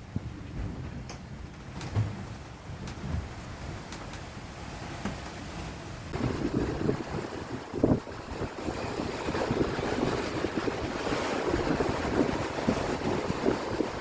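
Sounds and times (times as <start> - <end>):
wind buffeting microphone: 0.0 - 14.0
ocean waves rushing: 3.2 - 14.0.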